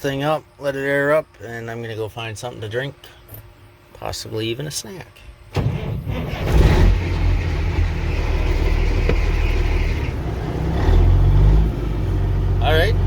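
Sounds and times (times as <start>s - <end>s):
engine cranking and idling: 5.5s - 13.0s.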